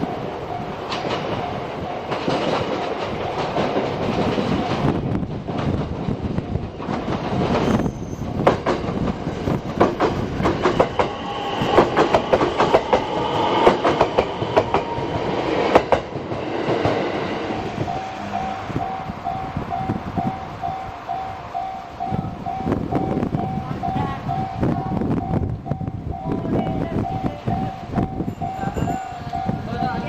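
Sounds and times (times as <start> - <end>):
train wheels clicking over rail joints: 0.0 - 20.4
metallic wheel squeal: 7.5 - 8.4, 28.2 - 29.6
level crossing bell dinging: 17.8 - 25.4, 26.1 - 30.0.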